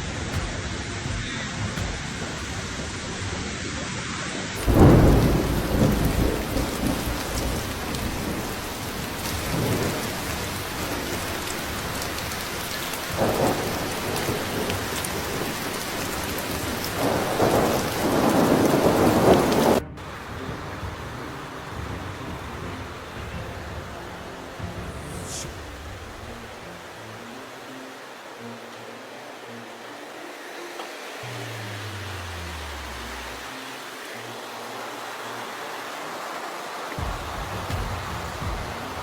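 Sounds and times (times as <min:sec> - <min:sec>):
heavy rain pouring: 0:00.0 - 0:39.0
low rumbles of thunder: 0:04.6 - 0:26.6, 0:37.0 - 0:39.0.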